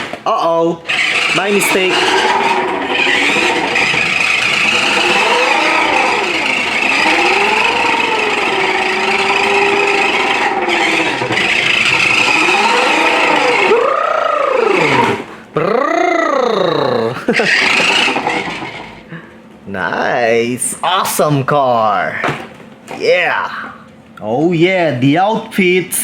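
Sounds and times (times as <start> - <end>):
toy car electric motor whining: 0.9 - 19.0.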